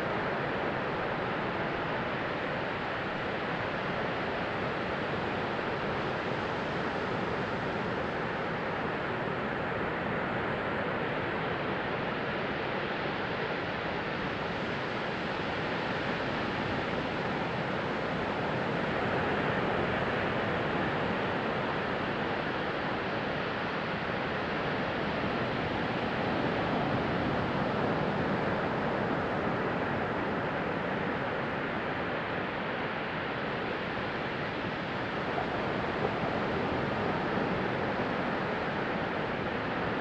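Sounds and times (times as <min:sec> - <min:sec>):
sea waves washing onto beach: 0:15.1 - 0:40.0.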